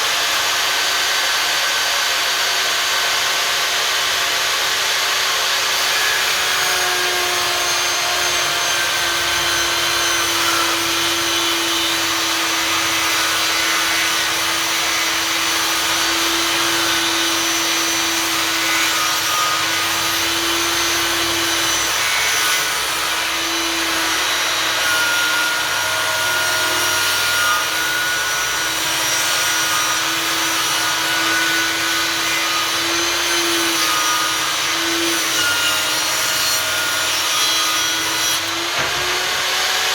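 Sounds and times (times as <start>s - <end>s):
table saw motor whine: 0.0s - 22.0s, 37.6s - 39.9s
saw blade cutting wood: 0.0s - 39.9s.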